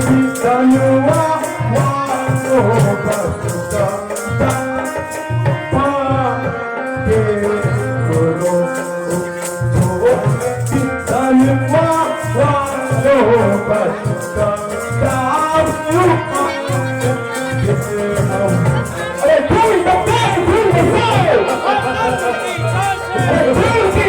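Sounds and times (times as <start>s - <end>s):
wavering melody: 7.0s - 24.0s
drum beat: 7.5s - 24.0s.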